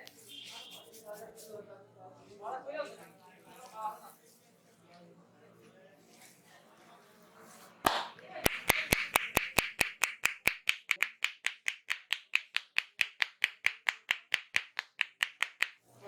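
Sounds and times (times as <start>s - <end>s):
hands slapping on head: 7.8s - 15.8s.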